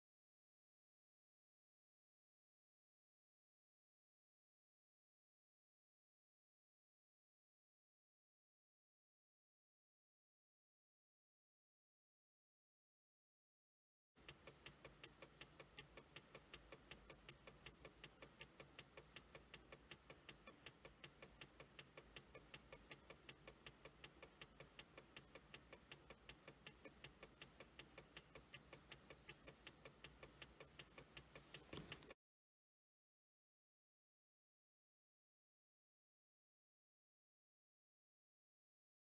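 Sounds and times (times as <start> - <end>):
faint rapid ticking: 14.2 - 32.2.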